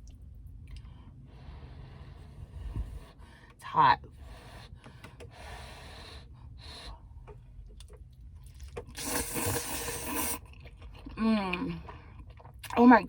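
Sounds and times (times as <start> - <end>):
quiet chewing: 7.2 - 12.8.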